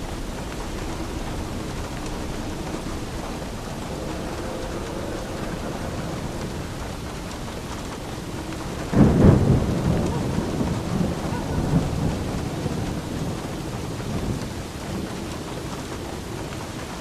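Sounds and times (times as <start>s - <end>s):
heavy rain: 0.0s - 17.0s
thunder clap and rumble: 0.0s - 17.0s.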